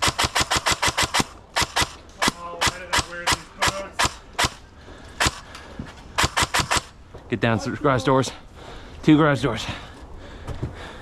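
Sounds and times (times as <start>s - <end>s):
airsoft gun shots: 0.0s - 4.6s, 5.2s - 5.5s, 6.2s - 7.0s.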